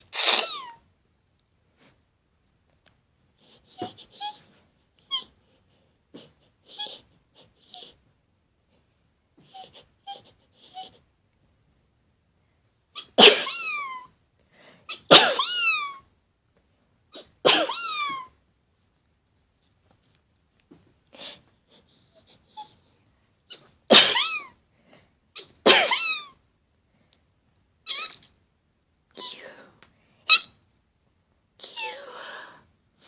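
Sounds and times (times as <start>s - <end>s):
person sneezing: 0.0s - 0.8s, 13.0s - 13.6s, 14.9s - 15.6s, 17.2s - 17.8s, 23.9s - 24.5s, 25.4s - 26.0s.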